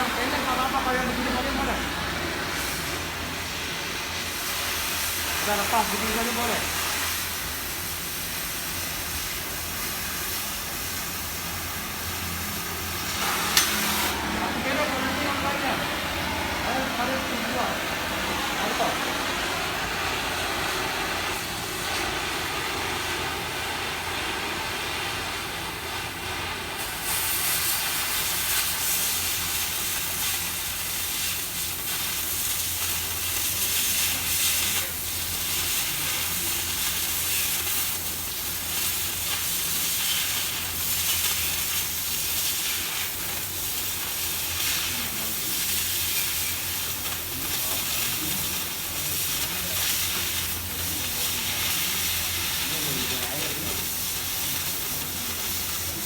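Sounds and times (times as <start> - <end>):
cutting torch hissing: 0.0 - 56.0.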